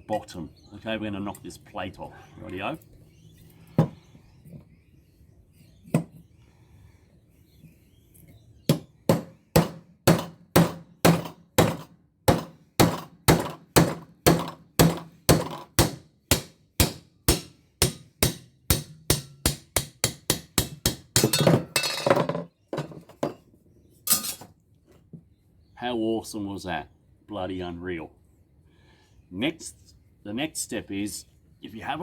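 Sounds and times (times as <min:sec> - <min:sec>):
hammer striking chisel on metal: 0:08.7 - 0:22.2.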